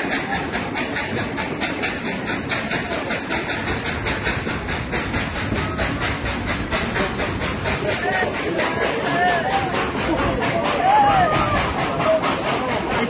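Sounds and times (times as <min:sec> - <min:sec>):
steady rushing noise: 0:00.0 - 0:13.0
steam locomotive chuffing: 0:00.0 - 0:13.0.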